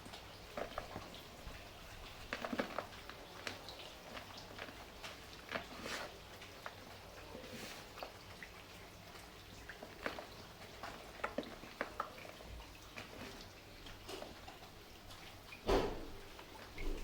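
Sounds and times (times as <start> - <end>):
cement crumbling crackles: 0.0 - 8.2, 9.6 - 17.0.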